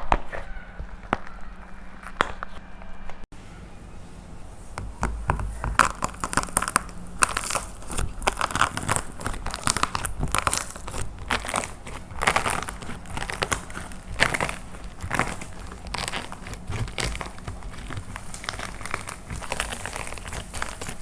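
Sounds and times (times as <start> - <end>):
plaster crushed by hand: 4.8 - 21.0.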